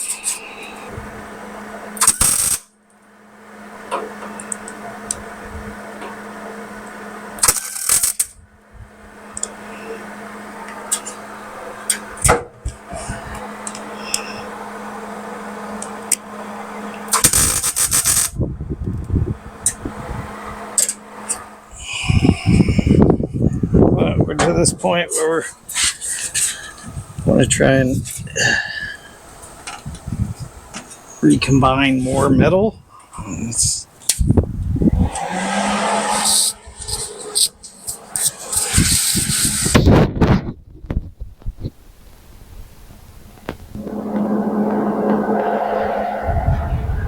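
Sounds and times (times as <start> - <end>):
steady hum: 0.0 - 7.5, 8.2 - 32.0, 43.6 - 47.0
welding arc crackling: 2.0 - 2.7, 7.4 - 8.3, 17.1 - 18.3.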